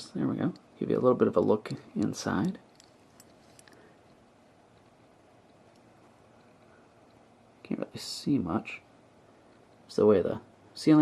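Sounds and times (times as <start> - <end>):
faint small clicks: 1.6 - 7.2.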